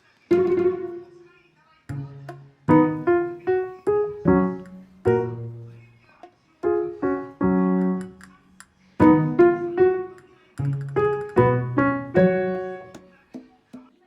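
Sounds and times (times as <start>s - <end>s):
piano music: 0.3s - 1.2s, 1.9s - 5.9s, 6.6s - 8.3s, 9.0s - 13.1s.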